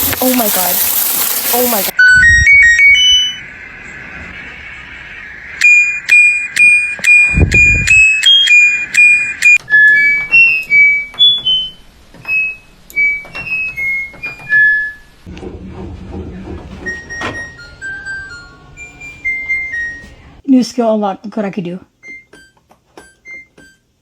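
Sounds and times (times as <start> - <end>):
short electronic beeps: 5.6 - 9.6.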